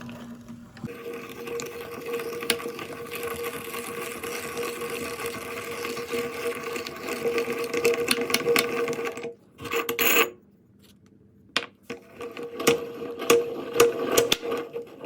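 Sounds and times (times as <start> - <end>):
meat grinder motor hum: 0.0 - 9.3.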